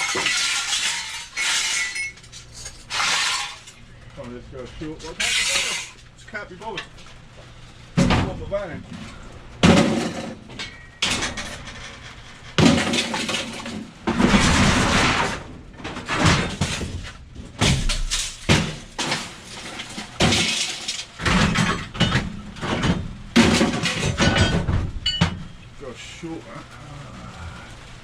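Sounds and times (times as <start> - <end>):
scrap metal crashing onto pile: 0.0 - 3.8, 5.0 - 6.0, 9.6 - 25.6.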